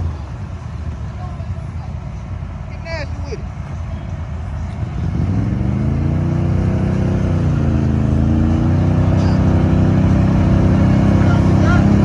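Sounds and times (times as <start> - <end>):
atv engine revving: 4.7 - 12.0.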